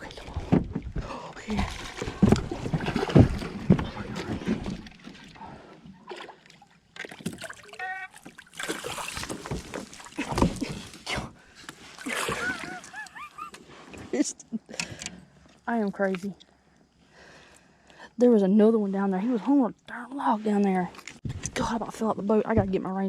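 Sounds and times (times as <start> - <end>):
water splashing: 0.0 - 13.5
heavy thumps in boat: 0.3 - 5.0.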